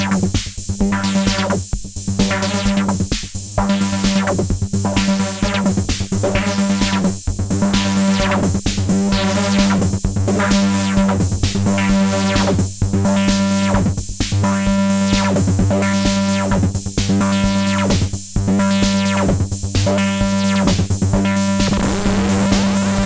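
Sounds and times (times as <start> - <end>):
bass synthesizer sequenced pattern: 21.6 - 23.0.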